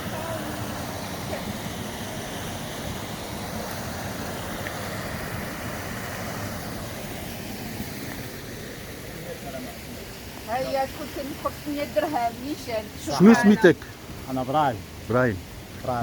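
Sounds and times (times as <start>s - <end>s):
rushing water: 0.0s - 16.0s.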